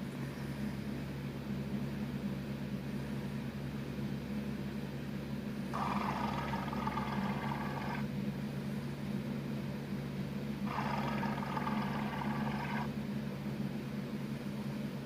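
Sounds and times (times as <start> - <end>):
steady low hum: 0.0 - 15.0
stomach growling: 5.8 - 8.1, 10.7 - 12.9.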